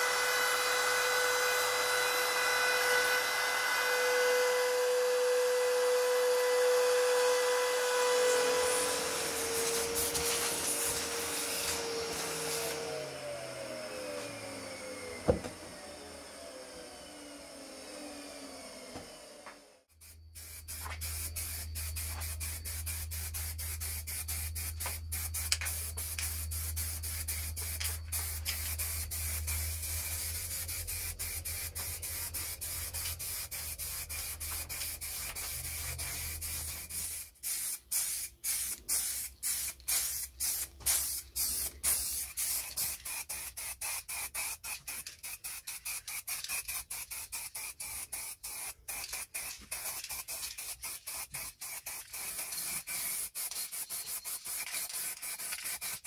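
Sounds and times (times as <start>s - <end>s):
compressed air hissing: 8.6s - 12.8s, 20.0s - 56.0s.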